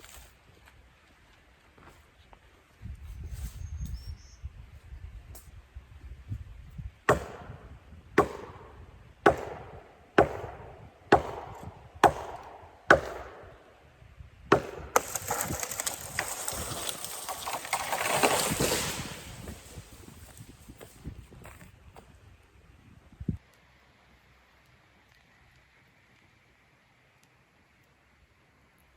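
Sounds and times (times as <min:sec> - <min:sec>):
hatchet chopping wood: 0:07.1 - 0:13.6, 0:14.5 - 0:19.8
rustling and crackling: 0:15.0 - 0:21.8.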